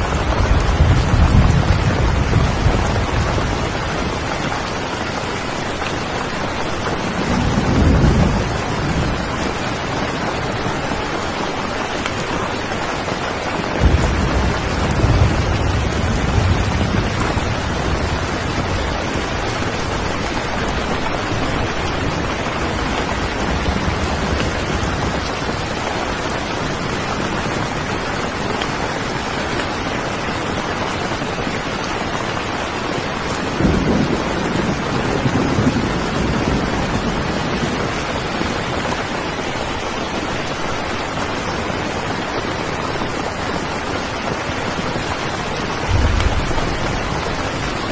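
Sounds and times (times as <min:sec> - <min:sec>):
low thunder rumble: 0:00.0 - 0:04.7, 0:06.9 - 0:10.8, 0:13.8 - 0:26.2, 0:33.6 - 0:38.6, 0:45.7 - 0:47.9
steady rain: 0:00.0 - 0:47.9.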